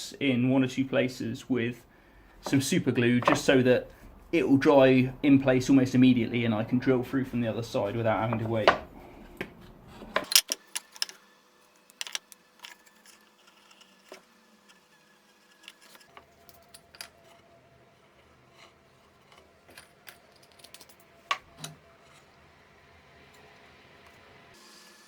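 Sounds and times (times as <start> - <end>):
small objects clicking on workbench: 10.2 - 17.4, 18.1 - 21.8.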